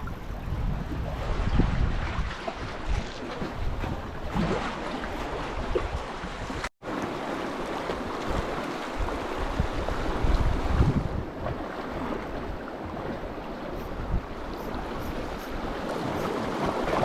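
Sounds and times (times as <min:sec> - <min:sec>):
wind buffeting microphone: 0:00.0 - 0:06.7, 0:07.7 - 0:17.0
sea waves washing: 0:00.9 - 0:17.0.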